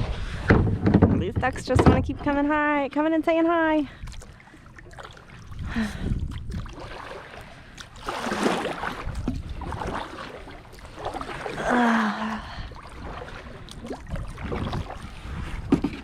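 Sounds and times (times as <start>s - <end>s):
paddle splashing in water: 4.0s - 16.0s.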